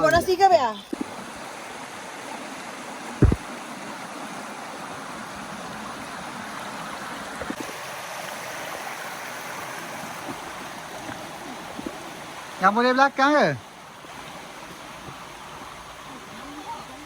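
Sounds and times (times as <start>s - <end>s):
flowing water rushing: 0.0s - 17.0s
faint knocks: 3.2s - 3.4s
low thump: 3.2s - 3.4s.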